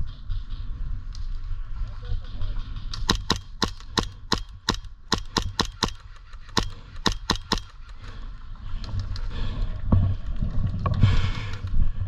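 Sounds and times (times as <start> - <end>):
airsoft pistol shots: 3.1 - 8.0.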